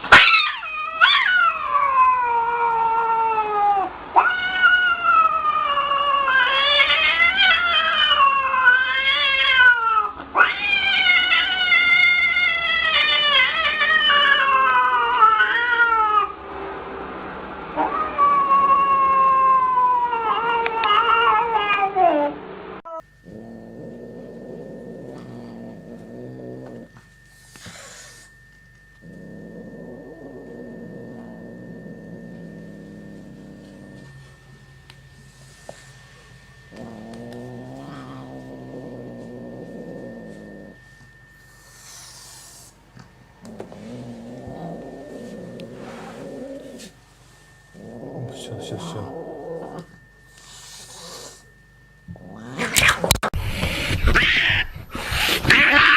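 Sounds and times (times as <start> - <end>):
cat yowling: 0.0 - 16.4, 17.8 - 26.9, 36.7 - 40.8, 52.1 - 53.3, 54.0 - 55.9
cat growling low: 17.8 - 34.4, 36.6 - 42.8, 43.4 - 47.0, 47.6 - 55.9
cat hissing: 41.6 - 42.8, 52.4 - 55.9.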